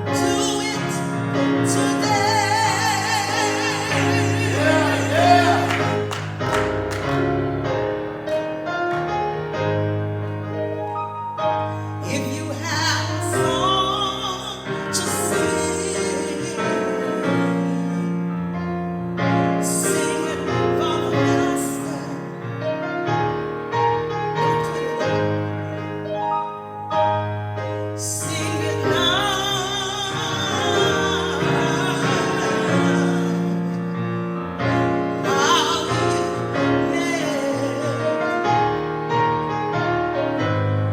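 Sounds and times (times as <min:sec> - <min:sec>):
voices singing gospel: 0:00.0 - 0:09.5, 0:12.0 - 0:18.1, 0:19.6 - 0:22.3, 0:28.0 - 0:34.0, 0:34.6 - 0:38.9
piano accompaniment: 0:00.0 - 0:40.9.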